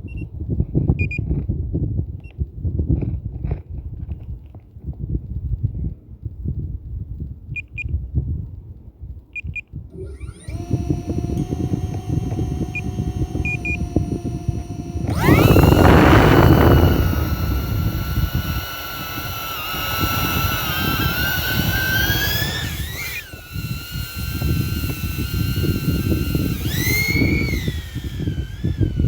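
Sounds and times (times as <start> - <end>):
drone propellers whining: 10.0 - 29.0
wind buffeting microphone: 10.0 - 29.0.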